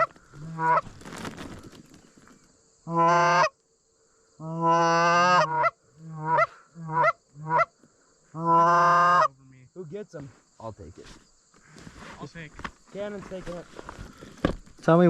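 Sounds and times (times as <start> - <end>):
goose call honks: 0.0 - 0.8, 2.9 - 3.5, 4.4 - 7.7, 8.3 - 9.4.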